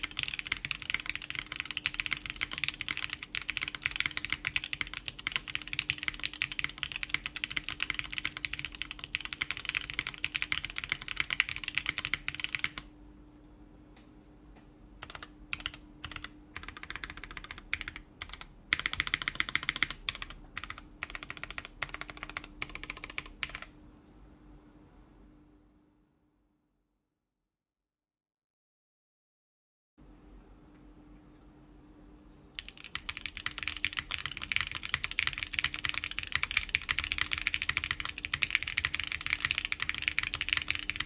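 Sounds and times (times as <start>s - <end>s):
mechanical keyboard typing: 0.0s - 12.9s, 15.0s - 23.8s, 32.6s - 41.0s.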